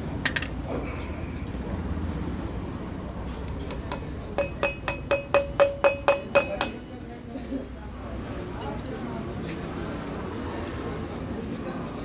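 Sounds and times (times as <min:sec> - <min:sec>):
hammer striking metal: 0:03.7 - 0:07.0.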